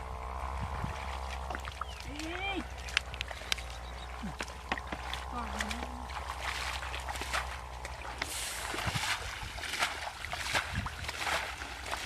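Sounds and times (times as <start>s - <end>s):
water sloshing and trickling: 0.0s - 12.0s.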